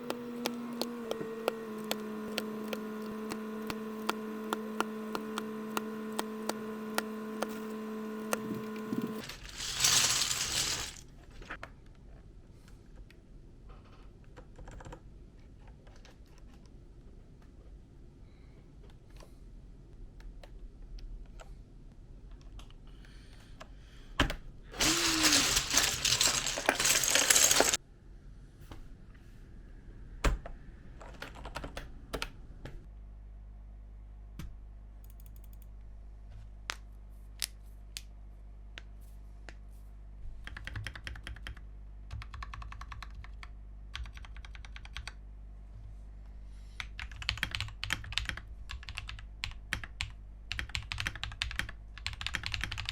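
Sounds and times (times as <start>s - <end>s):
mechanical keyboard typing: 0.0s - 10.7s, 14.4s - 15.0s, 31.1s - 32.3s, 40.4s - 45.2s, 46.8s - 52.9s.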